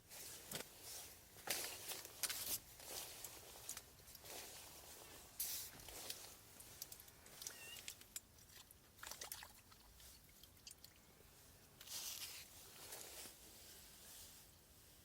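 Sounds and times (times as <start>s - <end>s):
light handling clicks and rustles: 0.1s - 8.5s.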